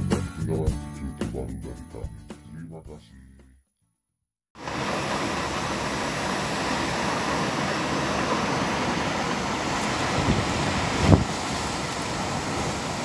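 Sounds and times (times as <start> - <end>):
strong wind blowing: 4.7 - 13.0.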